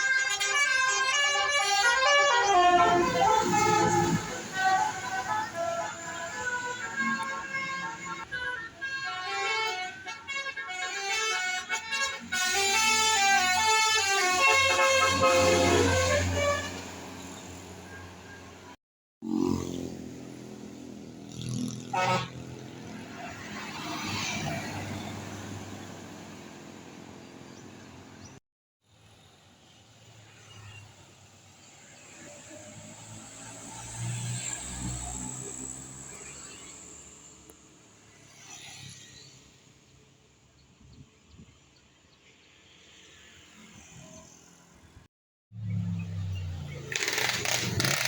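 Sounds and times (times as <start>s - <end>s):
multi-tone bus horn melody: 0.0s - 17.4s, 21.8s - 25.8s
bus engine running: 24.9s - 28.4s.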